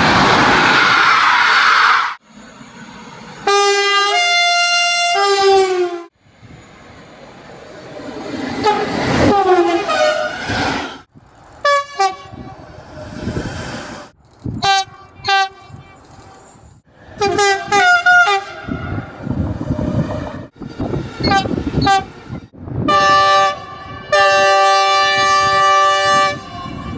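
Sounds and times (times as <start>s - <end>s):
approaching train rumble: 0.0s - 26.9s
train horn blasts: 3.4s - 6.1s, 8.6s - 10.5s, 11.6s - 12.5s, 14.5s - 15.9s, 17.2s - 19.1s, 21.2s - 22.1s, 22.8s - 26.9s.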